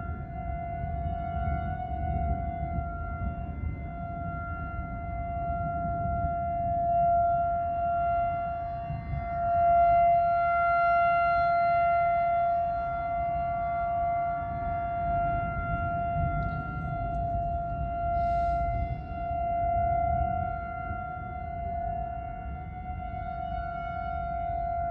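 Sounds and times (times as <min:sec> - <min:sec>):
warning siren steady tone: 0:00.0 - 0:24.9
low rumbling noise: 0:11.9 - 0:24.9.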